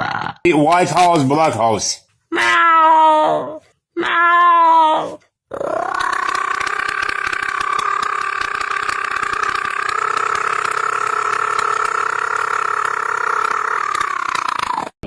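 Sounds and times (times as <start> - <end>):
man making buzzing vocal sound: 5.5 - 15.0.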